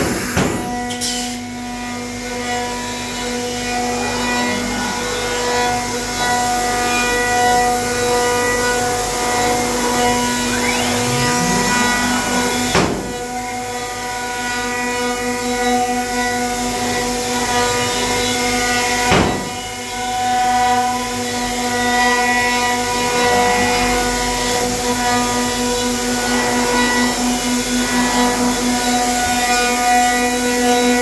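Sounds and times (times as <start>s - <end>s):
hiss of cutting wood: 0.0s - 1.5s, 9.2s - 14.0s
cnc router spindle whine: 0.0s - 31.0s.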